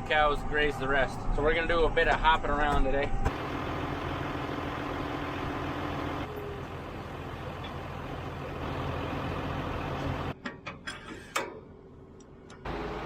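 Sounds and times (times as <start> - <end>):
vehicle engine running: 3.3 - 10.4.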